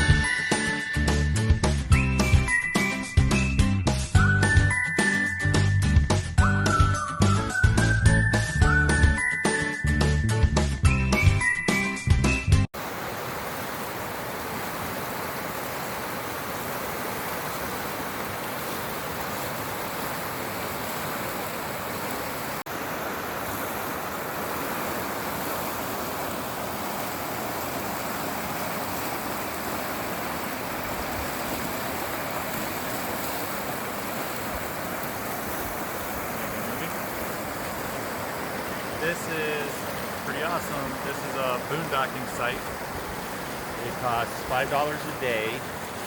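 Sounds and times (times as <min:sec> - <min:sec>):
rushing mountain river: 0:12.8 - 0:46.0.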